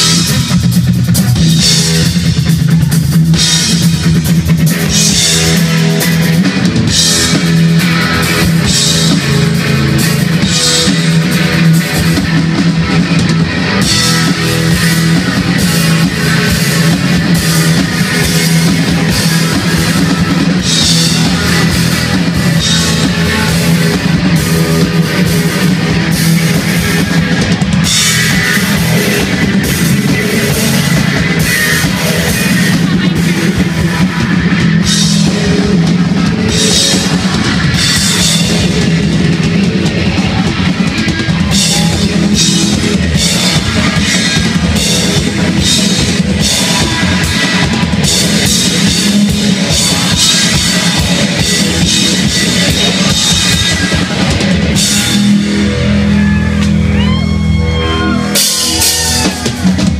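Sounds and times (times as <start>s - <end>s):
drum kit and crashing cymbals: 0.0s - 57.0s, 58.3s - 59.9s
rock band playing live: 0.0s - 59.9s.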